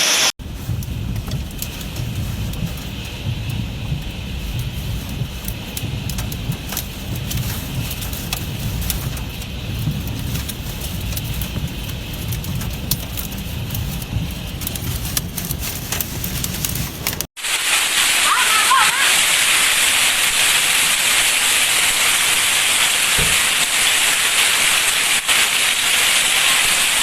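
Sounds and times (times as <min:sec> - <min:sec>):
steady rain: 0:00.0 - 0:27.0
wind buffeting microphone: 0:00.4 - 0:17.3
hailstones striking hard surfaces: 0:00.4 - 0:27.0.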